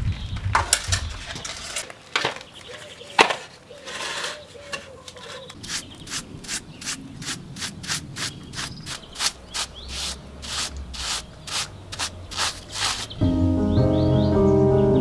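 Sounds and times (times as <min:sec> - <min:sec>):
hand scraping rough surface: 0:00.8 - 0:02.0, 0:02.7 - 0:13.2
soft piano music: 0:13.2 - 0:15.0.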